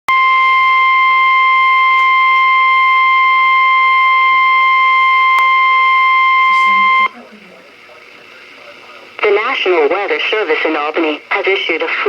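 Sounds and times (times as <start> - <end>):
loud steady high-pitched alarm tone: 0.1 - 7.3.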